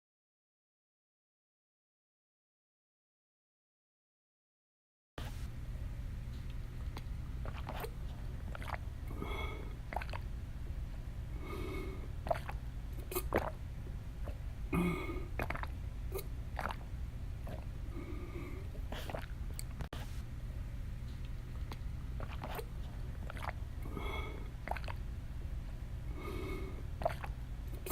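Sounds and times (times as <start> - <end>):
steady low hum: 5.2 - 27.9
wet mouth clicks: 7.0 - 8.8, 9.9 - 10.3, 12.2 - 13.6, 15.0 - 17.7, 18.7 - 19.9, 21.7 - 25.0, 27.0 - 27.9
woman gulping water: 7.0 - 10.4, 11.4 - 19.9, 21.7 - 25.1, 26.1 - 27.9.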